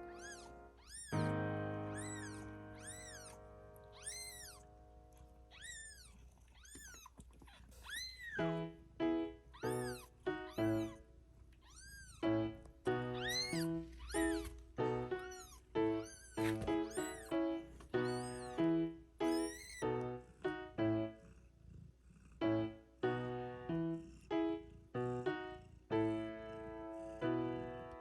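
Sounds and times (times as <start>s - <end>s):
cat meowing: 0.0s - 1.3s, 1.9s - 4.7s, 5.5s - 8.5s, 9.5s - 11.0s, 11.6s - 12.2s, 13.1s - 14.6s, 15.2s - 17.4s, 18.0s - 18.6s, 19.2s - 19.9s.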